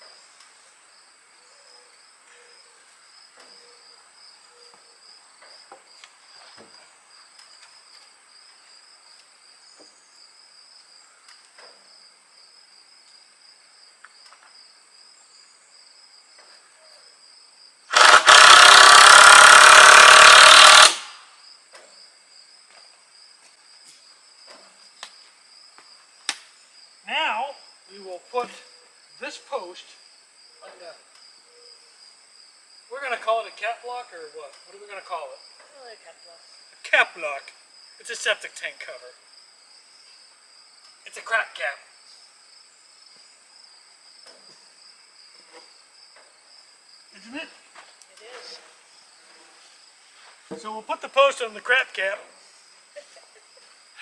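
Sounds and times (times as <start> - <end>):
crickets chirping: 0.0 - 54.0
loud power tool running: 17.9 - 21.3.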